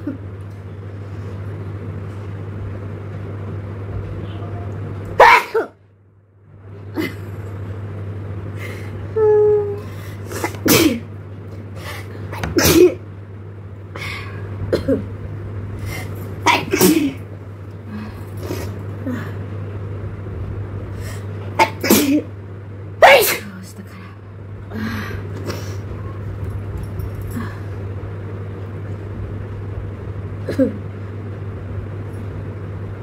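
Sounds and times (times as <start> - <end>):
steady low hum: 0.0 - 33.0
person sneezing: 5.2 - 5.8, 10.3 - 11.1, 11.8 - 13.0, 15.9 - 17.2, 21.6 - 22.3, 23.0 - 23.5.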